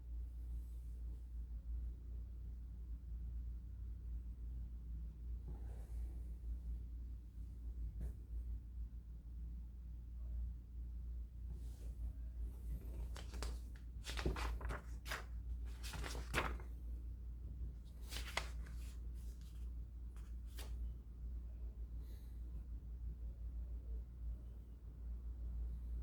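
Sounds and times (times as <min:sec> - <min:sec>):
steady low hum: 0:03.4 - 0:26.0
rustles and clicks of handling: 0:11.6 - 0:16.8, 0:17.9 - 0:20.8.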